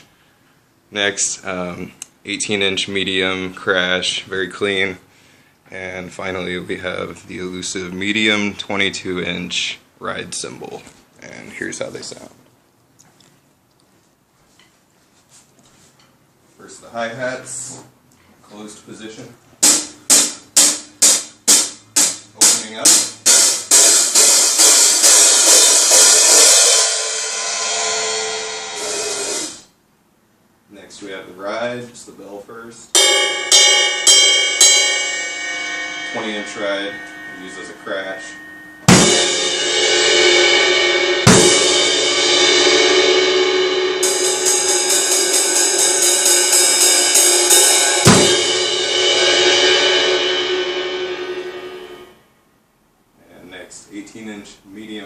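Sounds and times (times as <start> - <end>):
open hi-hats struck with stick: 19.6 - 29.8, 32.9 - 52.2
ride cymbal crashes: 19.6 - 29.8, 32.9 - 52.3.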